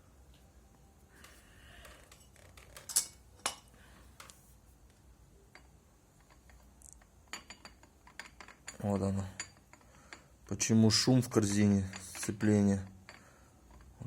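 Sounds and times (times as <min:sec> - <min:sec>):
metal parts clinking: 0:01.8 - 0:04.3, 0:05.5 - 0:14.0.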